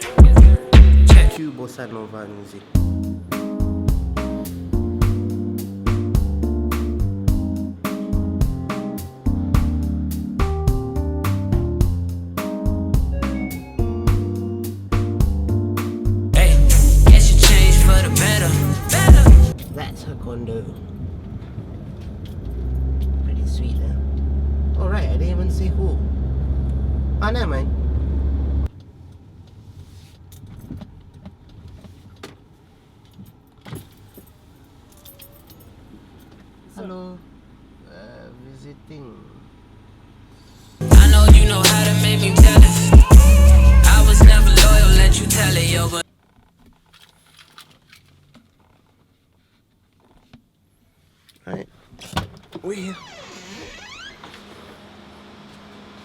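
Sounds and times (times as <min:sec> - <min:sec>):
low car rumble: 0:16.4 - 0:29.7
light clicks and jingles: 0:33.0 - 0:36.5.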